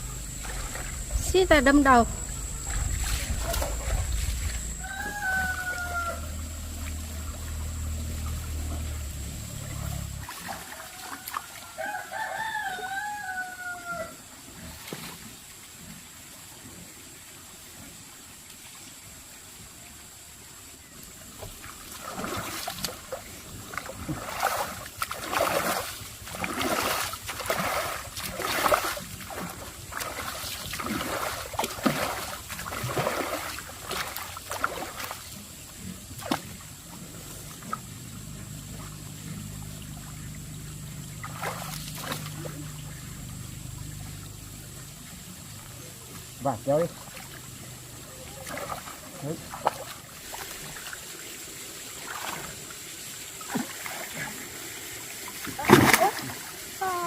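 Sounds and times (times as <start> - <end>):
low hum: 0.0 - 11.6, 22.3 - 50.2
water splashing and sloshing: 0.0 - 19.6, 20.6 - 57.0
rooster crowing: 3.5 - 7.3, 10.4 - 14.3.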